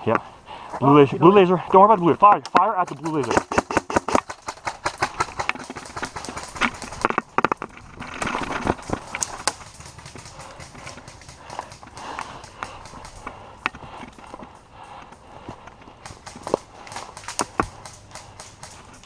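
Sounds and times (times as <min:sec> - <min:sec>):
airsoft guns firing: 0:02.8 - 0:07.2
gun clicks: 0:09.0 - 0:13.8, 0:16.0 - 0:19.0.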